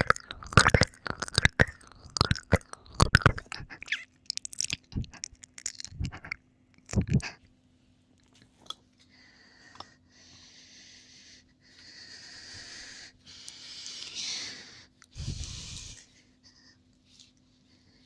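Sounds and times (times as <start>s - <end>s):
faint steady hum: 0.0s - 18.0s
heavy breathing close to microphone: 9.1s - 16.8s.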